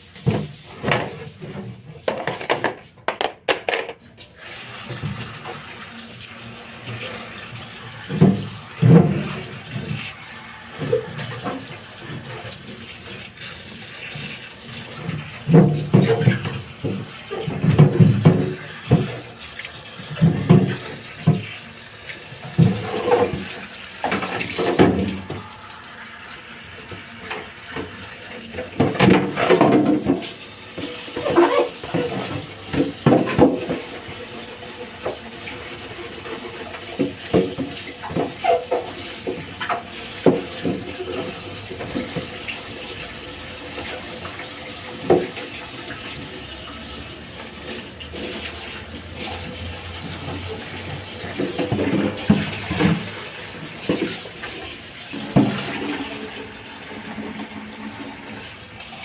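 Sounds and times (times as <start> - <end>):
tap water running into sink: 0.0 - 59.0
items clattering against sink: 0.2 - 25.7, 26.8 - 59.0.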